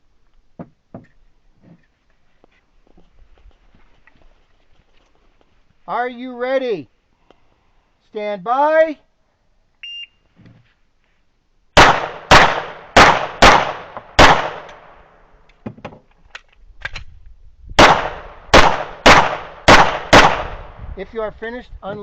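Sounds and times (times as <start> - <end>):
shot timer beep: 9.8 - 10.2
pistol shots: 11.8 - 15.0, 17.8 - 20.8.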